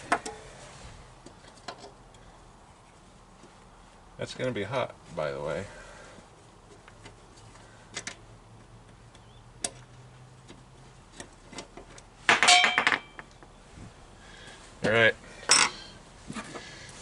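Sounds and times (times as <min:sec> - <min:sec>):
ringing metal clatter: 0:12.3 - 0:13.3.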